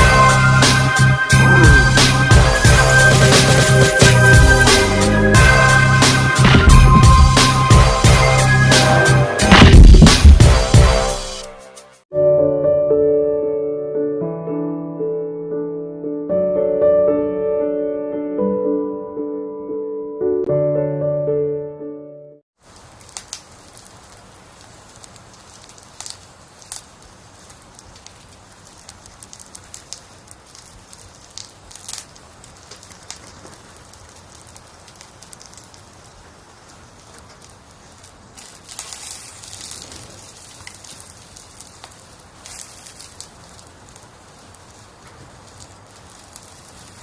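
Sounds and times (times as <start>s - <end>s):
campfire crackling and hissing: 0.0s - 12.0s, 22.6s - 47.0s.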